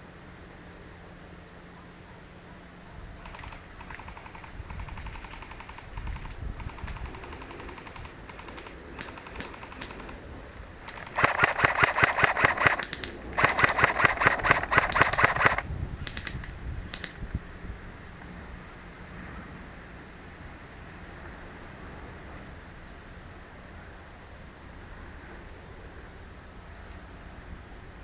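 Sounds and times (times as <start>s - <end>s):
airsoft guns firing bursts: 3.2s - 17.2s.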